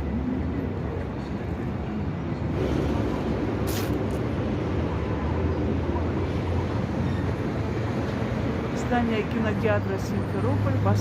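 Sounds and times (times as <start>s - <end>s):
city street traffic rumble: 0.0s - 11.0s
brief hiss: 3.6s - 4.2s.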